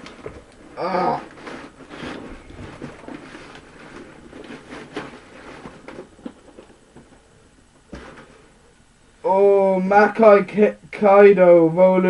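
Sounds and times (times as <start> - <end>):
paper rustling and crinkling: 0.0 - 8.6.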